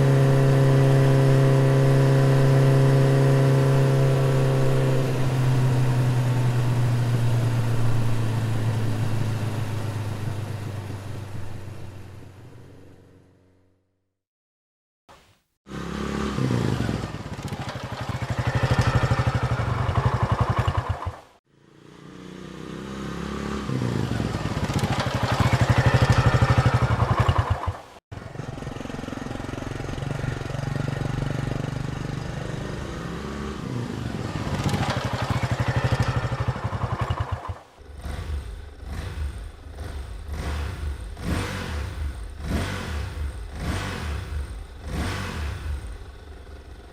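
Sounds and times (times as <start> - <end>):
motorcycle engine running: 15.7 - 46.9.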